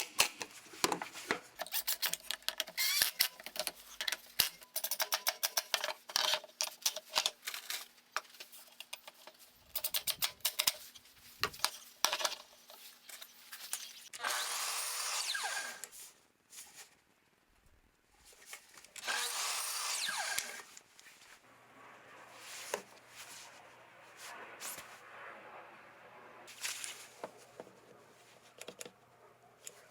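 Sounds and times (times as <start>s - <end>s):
power drill running: 14.2s - 15.9s, 19.0s - 20.7s.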